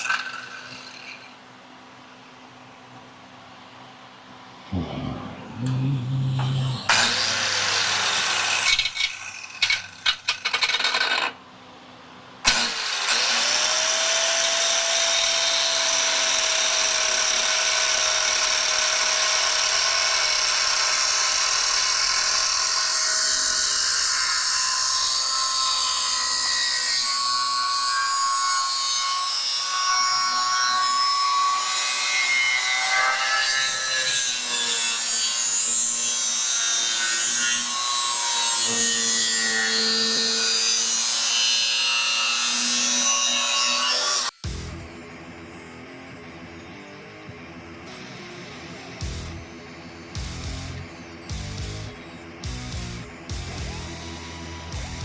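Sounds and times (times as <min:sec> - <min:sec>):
power tool grinding cement: 0:06.3 - 0:11.2, 0:12.5 - 0:24.4.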